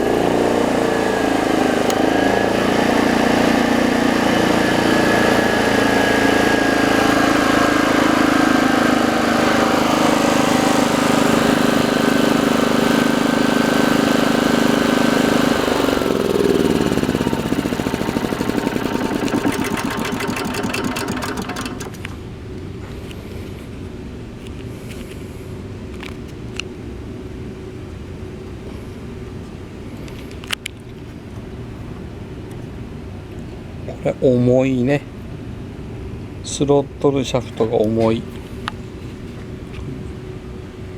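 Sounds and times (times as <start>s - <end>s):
generator engine running: 0.0s - 22.4s.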